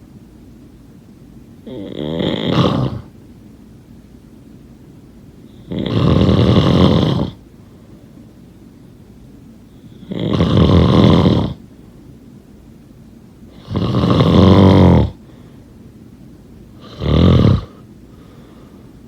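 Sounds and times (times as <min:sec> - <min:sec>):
person snoring: 0:01.7 - 0:03.1, 0:05.6 - 0:07.4, 0:10.0 - 0:11.6, 0:13.6 - 0:15.2, 0:16.8 - 0:17.8.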